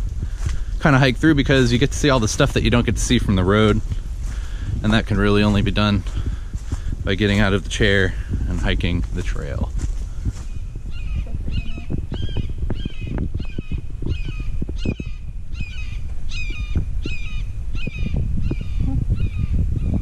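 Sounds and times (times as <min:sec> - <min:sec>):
wind rumble on microphone: 0:00.0 - 0:20.0
bird calling: 0:10.9 - 0:19.9.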